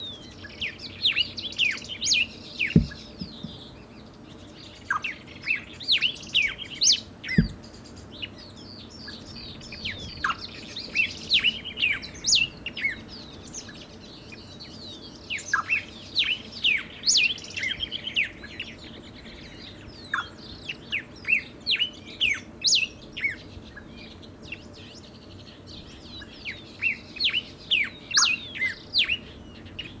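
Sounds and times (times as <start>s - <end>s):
low thumps: 2.8s - 3.6s, 7.4s - 7.7s.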